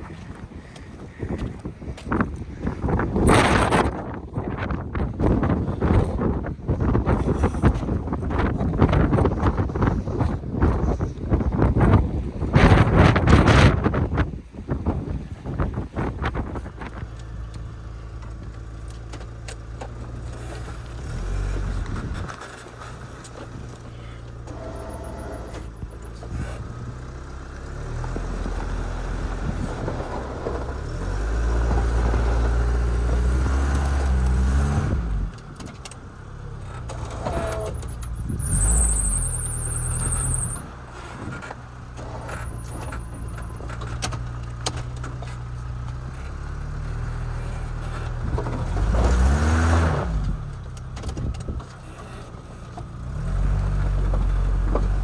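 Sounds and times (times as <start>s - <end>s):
car engine revving: 17.0s - 55.0s.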